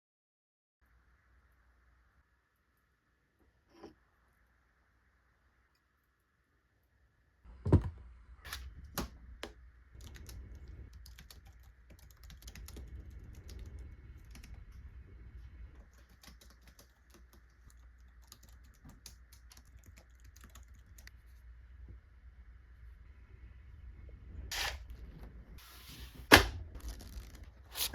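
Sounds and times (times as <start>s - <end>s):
typing on a keyboard: 10.0s - 14.6s, 15.8s - 21.1s.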